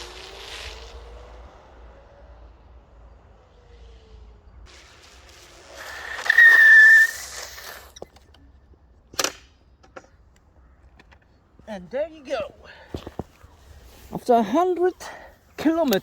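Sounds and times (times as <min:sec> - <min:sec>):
electric scooter motor whine: 0:00.0 - 0:07.2
rushing noise with whistle tone: 0:03.5 - 0:08.0.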